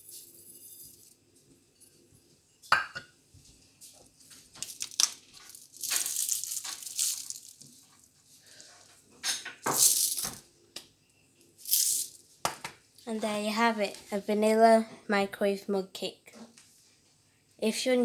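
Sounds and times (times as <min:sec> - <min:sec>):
sprinkles rattling from container: 0:04.6 - 0:08.0, 0:09.7 - 0:10.4, 0:11.7 - 0:12.2.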